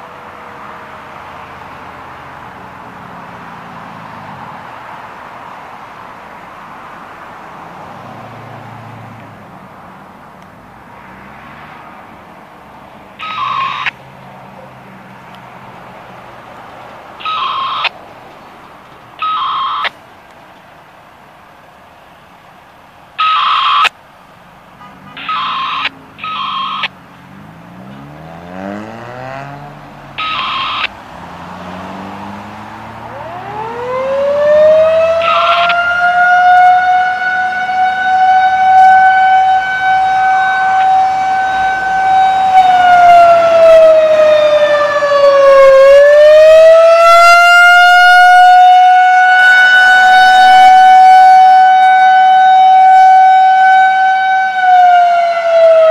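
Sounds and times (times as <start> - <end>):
short electronic beeps: 13.2 - 13.9, 17.2 - 17.9, 19.2 - 19.9, 25.1 - 26.9, 30.2 - 30.9
warning siren winding up: 13.2 - 14.0, 17.2 - 18.0, 19.2 - 20.0, 23.2 - 23.9, 25.1 - 27.0, 30.2 - 31.0, 33.1 - 55.9.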